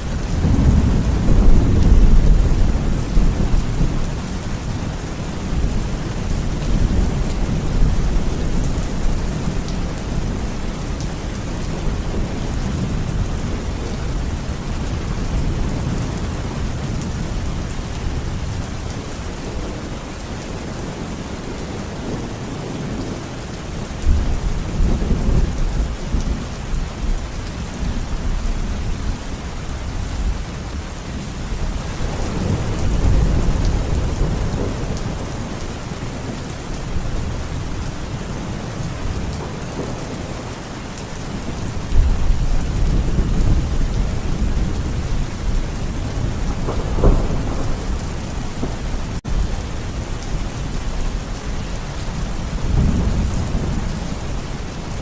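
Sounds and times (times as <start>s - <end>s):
thunder rumbling: 0.0s - 19.9s, 41.2s - 55.0s
heavy rain: 0.0s - 55.0s
thunder clap: 45.5s - 49.4s.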